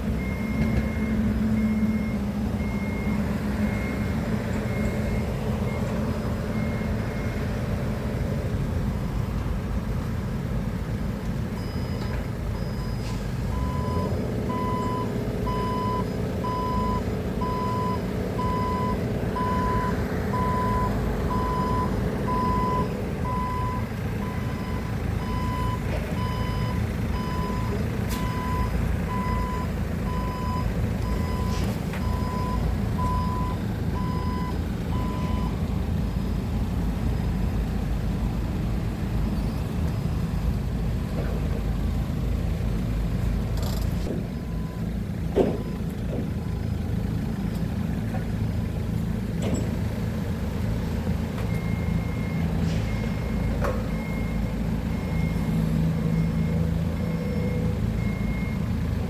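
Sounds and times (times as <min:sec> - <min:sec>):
heavy machine engine running: 0:00.0 - 0:59.0
reverse alarm beeping: 0:00.2 - 0:05.9, 0:11.6 - 0:36.4.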